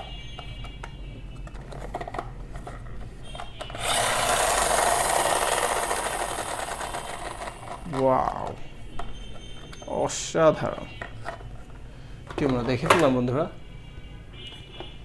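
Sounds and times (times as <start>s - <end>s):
loud rough scraping: 3.8s - 7.9s.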